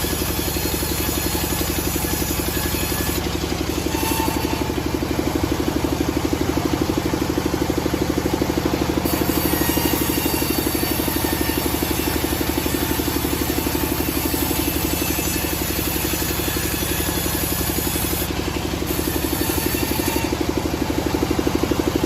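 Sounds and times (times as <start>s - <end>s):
engine running steadily: 0.0s - 22.0s.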